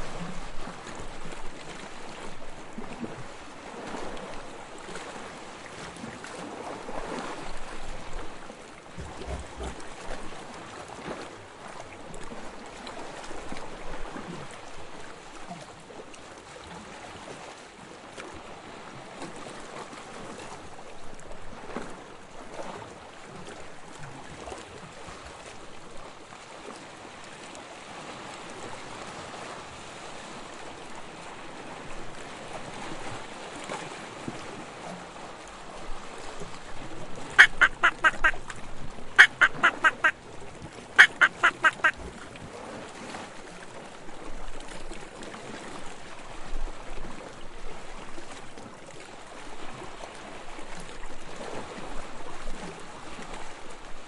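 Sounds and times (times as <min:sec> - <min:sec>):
sea washing: 0:30.5 - 0:45.7
ducks quacking: 0:37.4 - 0:38.4, 0:39.2 - 0:40.2, 0:41.0 - 0:42.0.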